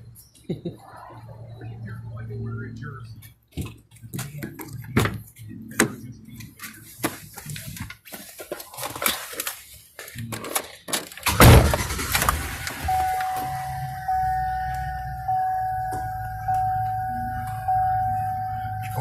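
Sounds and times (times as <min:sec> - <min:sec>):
truck engine starting and idling: 0:11.0 - 0:19.0
electronic warning chime: 0:12.8 - 0:19.0.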